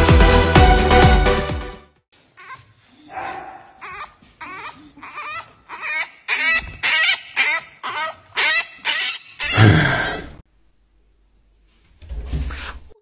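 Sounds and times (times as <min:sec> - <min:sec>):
animal crying: 0:02.4 - 0:10.4.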